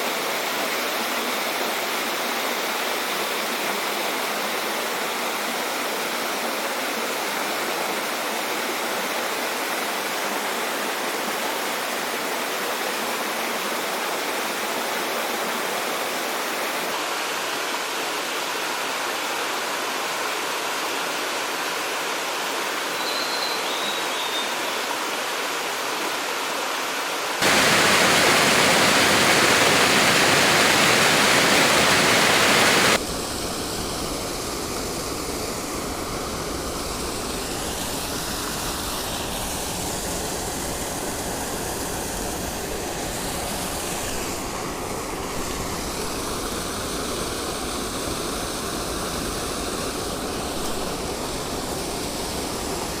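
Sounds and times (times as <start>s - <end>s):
mountain stream rushing: 24.7s - 33.0s, 37.0s - 53.0s.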